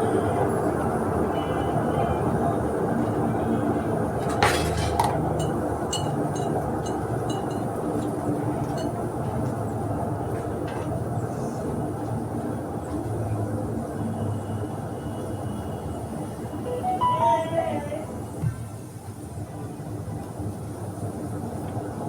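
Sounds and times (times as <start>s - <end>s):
metal utensils clinking on cookware: 4.2s - 7.8s.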